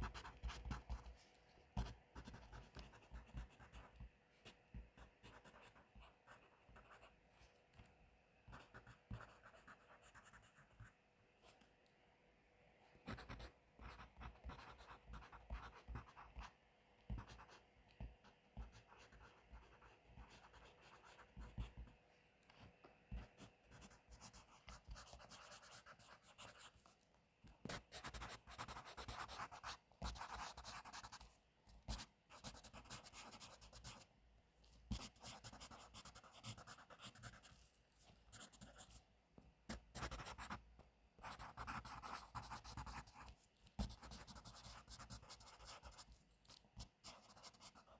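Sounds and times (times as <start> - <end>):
pencil writing on paper: 0.0 - 1.1, 1.8 - 7.1, 8.5 - 10.9, 13.1 - 16.5, 17.1 - 17.6, 18.6 - 21.9, 23.1 - 26.8, 27.6 - 31.2, 31.9 - 34.0, 34.9 - 37.6, 38.3 - 39.0, 39.7 - 40.6, 41.2 - 46.1, 46.8 - 47.9.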